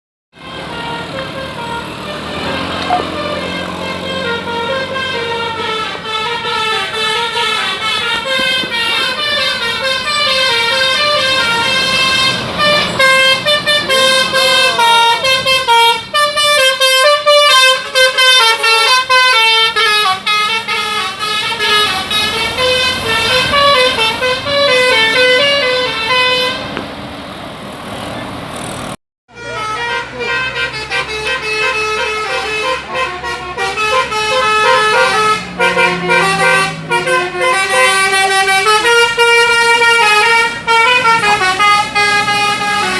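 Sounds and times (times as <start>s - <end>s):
bus horn playing a tune: 0.3s - 26.8s, 29.3s - 42.9s.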